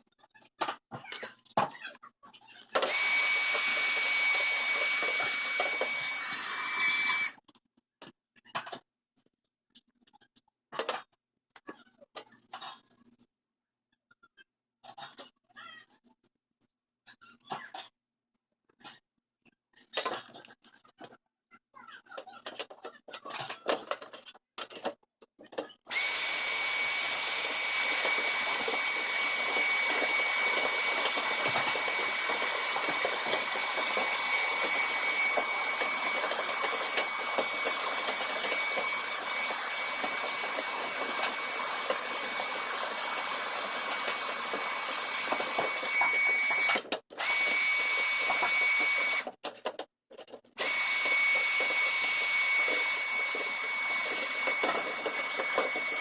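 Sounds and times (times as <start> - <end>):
electric motor tool whining: 2.8 - 7.4, 25.9 - 49.3, 50.6 - 56.0.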